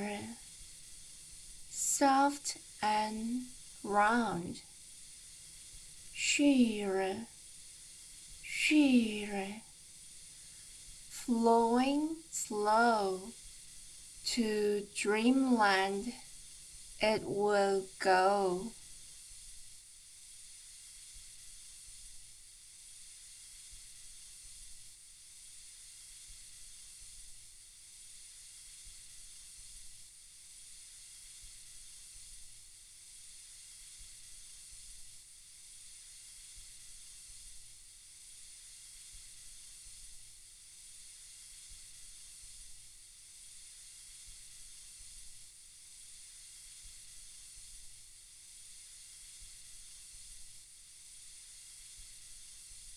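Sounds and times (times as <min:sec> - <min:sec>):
soft white-noise hiss: 0:00.0 - 0:52.9.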